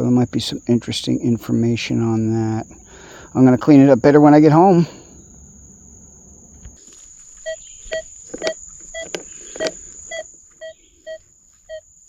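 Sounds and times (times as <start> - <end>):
insect trill: 0.0 - 12.0
metal detector beeping: 7.4 - 11.9.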